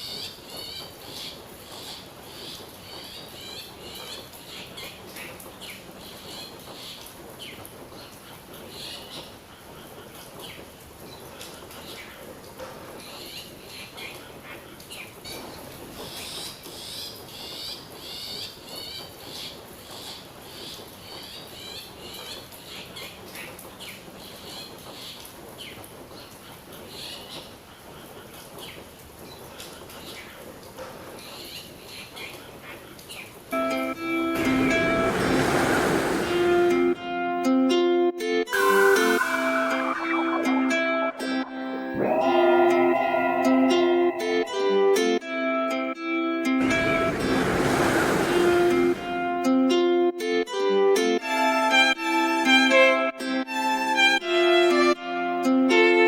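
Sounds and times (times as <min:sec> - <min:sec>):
birds chirping and whistling: 0:38.5 - 0:44.8.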